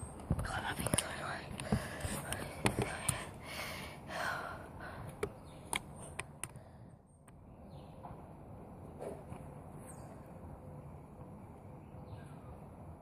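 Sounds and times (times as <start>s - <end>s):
soft breath: 1.2s - 5.3s, 6.5s - 7.0s.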